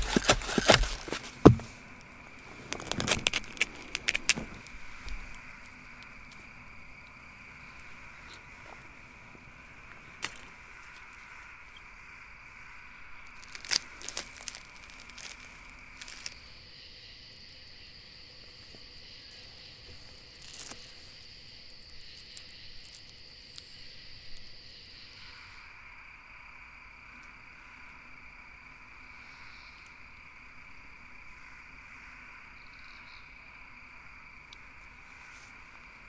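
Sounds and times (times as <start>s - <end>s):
sharp snaps and crackles: 0.0s - 7.2s, 10.1s - 11.3s, 13.2s - 16.6s, 19.8s - 25.2s
insects chirring: 0.0s - 36.0s.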